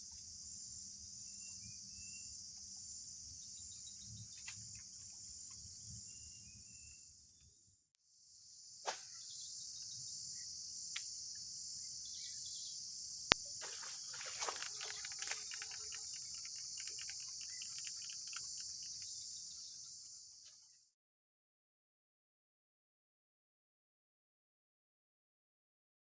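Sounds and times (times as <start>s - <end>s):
insects chorus: 0.1s - 7.4s, 8.2s - 20.9s
faint ticks: 14.2s - 19.2s
sharp clicks: 14.4s - 19.1s.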